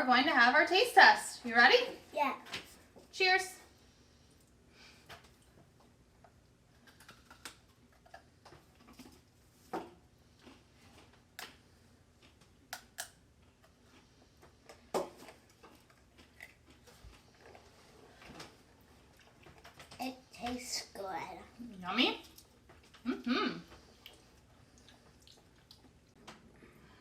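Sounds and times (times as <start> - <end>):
people chewing crunchy cookies: 3.8 - 20.8, 21.6 - 27.0.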